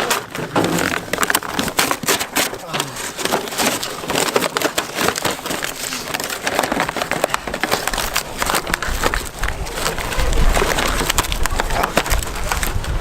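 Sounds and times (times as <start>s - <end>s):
crackling and snapping: 0.0s - 13.0s.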